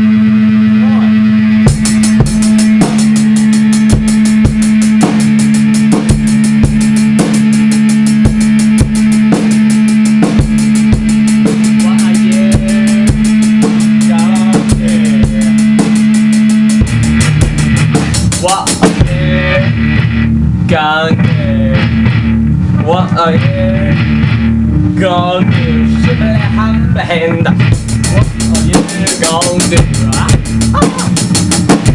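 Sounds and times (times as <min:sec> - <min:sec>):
held low note: 0:00.0 - 0:31.4
heavy low bass: 0:00.0 - 0:31.9
rapid cymbal hits: 0:01.4 - 0:20.3, 0:27.6 - 0:31.9.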